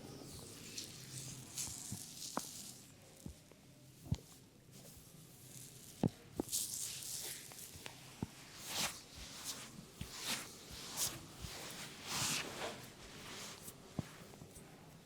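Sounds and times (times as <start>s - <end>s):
hands rubbing through hair: 8.6s - 14.6s.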